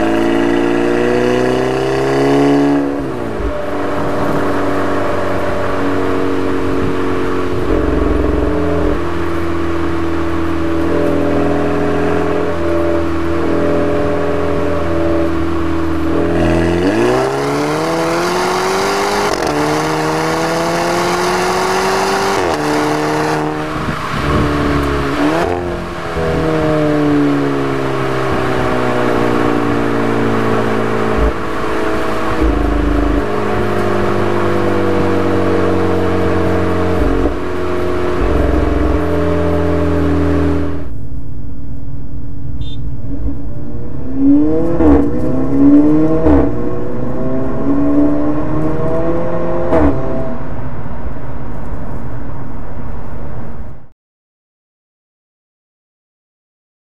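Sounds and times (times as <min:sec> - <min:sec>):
car engine accelerating hard: 0:00.0 - 0:41.0, 0:43.0 - 0:50.6
exhaust blurt on upshift: 0:06.8 - 0:11.0, 0:31.0 - 0:40.9.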